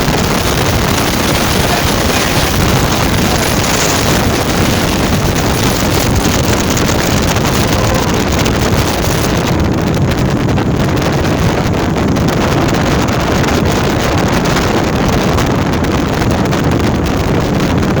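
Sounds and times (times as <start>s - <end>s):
water rushing: 0.0s - 9.7s
boat outboard engine: 0.0s - 10.5s
wind buffeting microphone: 0.0s - 18.0s.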